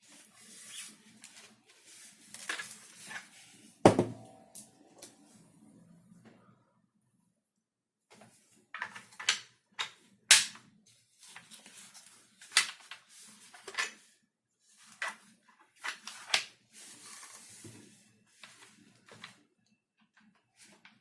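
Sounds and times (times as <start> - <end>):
plastic parts clicking and knocking: 8.8 - 10.6.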